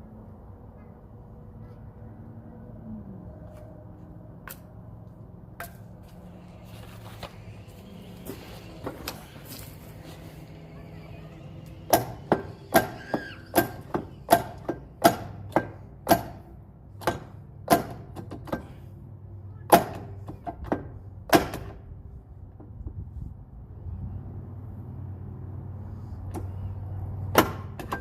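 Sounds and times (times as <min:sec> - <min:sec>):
hammer striking metal: 0:11.9 - 0:18.0.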